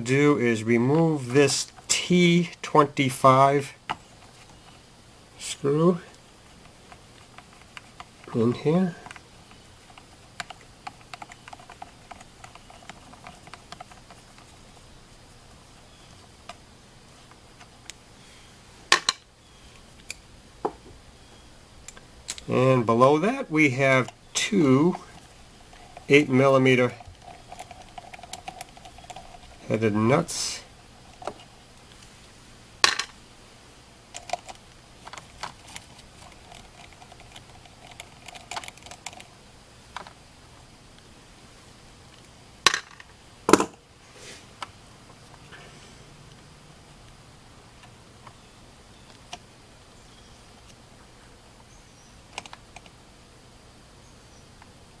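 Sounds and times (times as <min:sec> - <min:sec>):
hand tool metal taps: 0:43.5 - 0:43.8.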